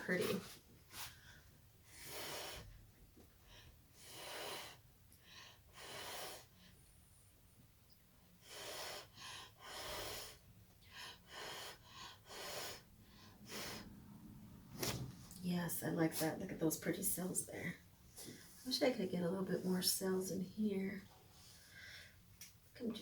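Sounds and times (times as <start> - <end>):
person blowing puffs of air: 11.3 - 14.0.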